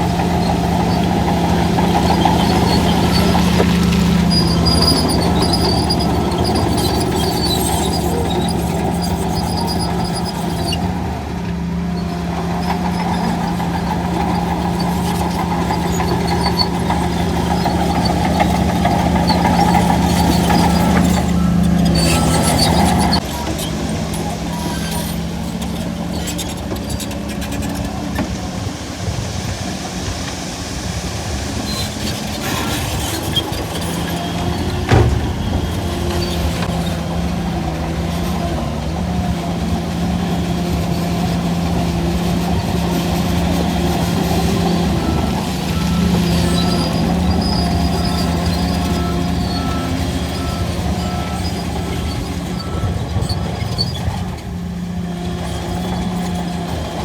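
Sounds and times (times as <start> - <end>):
bulldozer diesel engine running: 0.0 - 57.0
reversing beeps: 44.9 - 53.8.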